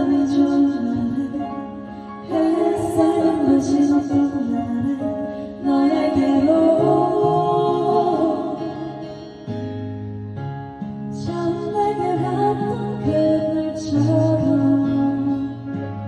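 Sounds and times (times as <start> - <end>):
person singing a song: 0.0 - 9.2
sustained musical accompaniment: 0.0 - 16.0.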